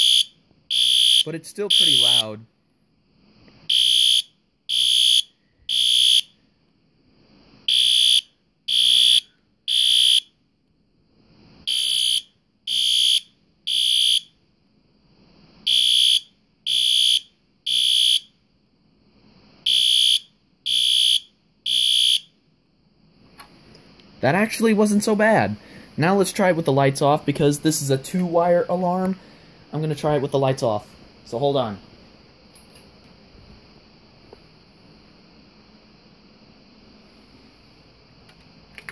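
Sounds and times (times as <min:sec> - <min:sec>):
fire alarm horn blasts: 0:00.0 - 0:02.4, 0:03.7 - 0:06.3, 0:07.7 - 0:10.3, 0:11.7 - 0:14.3, 0:15.7 - 0:18.3, 0:19.6 - 0:22.3.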